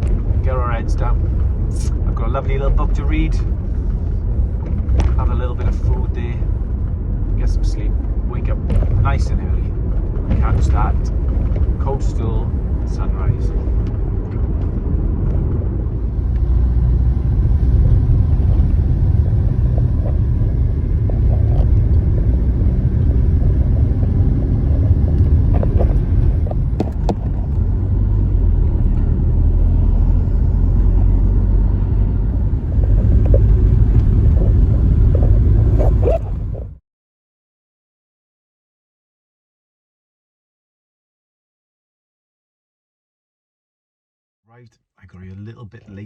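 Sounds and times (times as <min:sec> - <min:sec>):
van engine and tyres rumble: 0:00.0 - 0:36.8.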